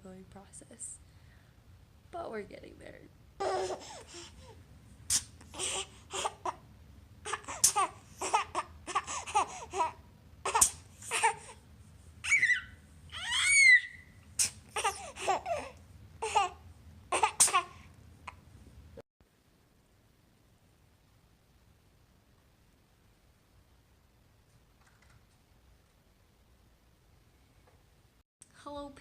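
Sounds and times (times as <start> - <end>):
baby laughing and babbling: 3.4 - 4.6, 5.5 - 6.6, 7.2 - 11.6, 12.2 - 18.4
baby squealing: 12.2 - 16.5.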